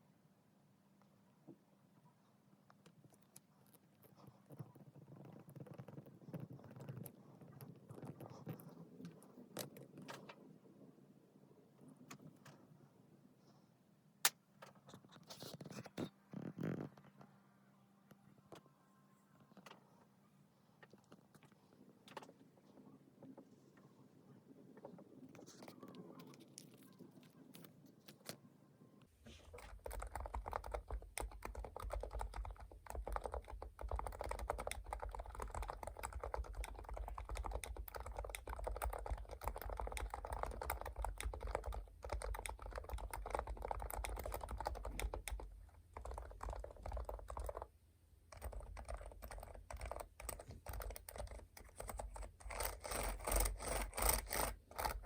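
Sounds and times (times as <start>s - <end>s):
fast keyboard typing: 4.5s - 10.3s, 29.5s - 47.7s, 48.3s - 55.0s.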